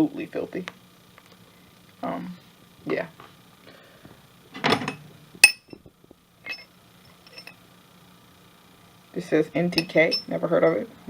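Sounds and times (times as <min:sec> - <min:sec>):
ringing metal clinks: 0:05.4 - 0:05.8, 0:06.5 - 0:06.7, 0:09.8 - 0:10.4.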